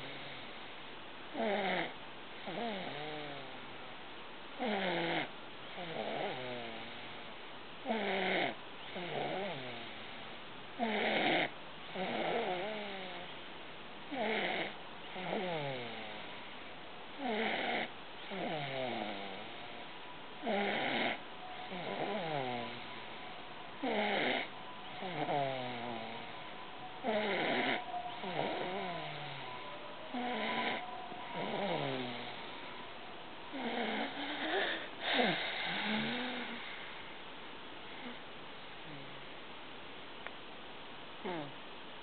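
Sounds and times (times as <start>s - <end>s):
snoring with whistling tone: 1.4s - 3.5s, 4.6s - 7.1s, 7.9s - 10.0s, 10.8s - 13.2s, 14.1s - 16.4s, 17.2s - 19.8s, 20.4s - 32.9s, 33.5s - 36.7s.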